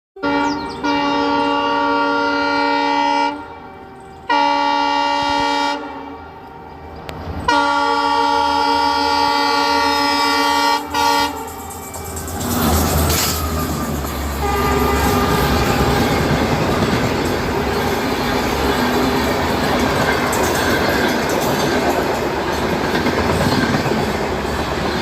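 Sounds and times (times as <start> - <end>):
train horn blasts: 0.2 - 12.0, 13.1 - 19.3
moving train rumble: 0.2 - 25.0.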